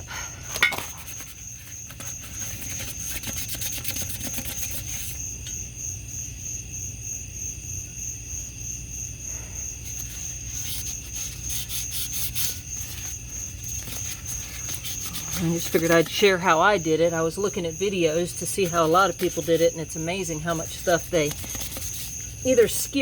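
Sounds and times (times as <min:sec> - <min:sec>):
crickets chirping: 0:00.0 - 0:23.0
sandpaper rubbing on metal: 0:10.0 - 0:16.1, 0:20.6 - 0:22.3.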